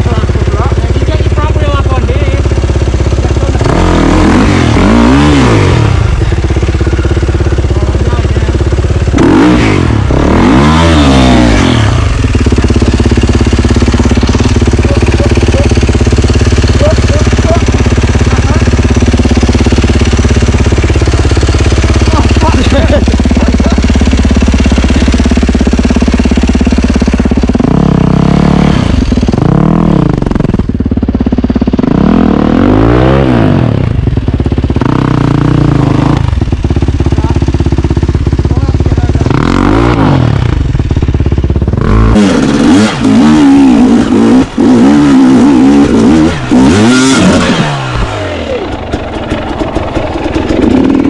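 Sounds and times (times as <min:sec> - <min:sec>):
dirt bike engine revving: 0:00.0 - 0:51.0.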